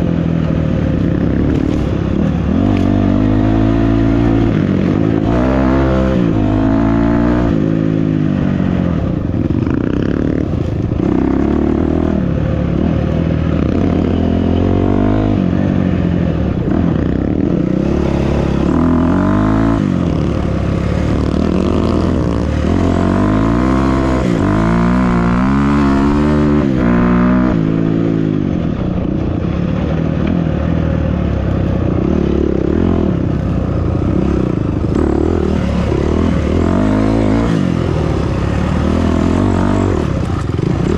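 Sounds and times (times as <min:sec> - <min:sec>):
off-road vehicle engine revving: 0:00.0 - 0:28.7, 0:29.8 - 0:40.9.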